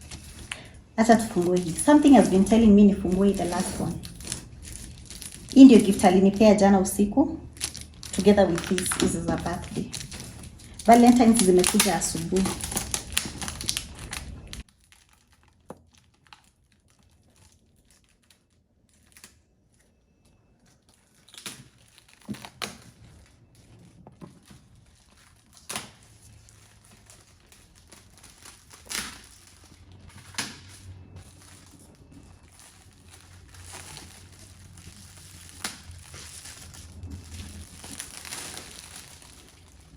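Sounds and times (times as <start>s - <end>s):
paper crinkling and tearing: 0.0s - 39.9s.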